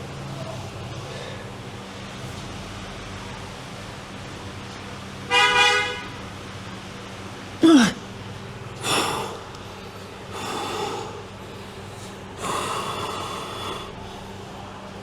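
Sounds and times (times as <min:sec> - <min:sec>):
man breathing hard: 0:00.9 - 0:01.8, 0:07.6 - 0:15.0
steady low hum: 0:06.0 - 0:15.0
man grunting: 0:07.6 - 0:08.1.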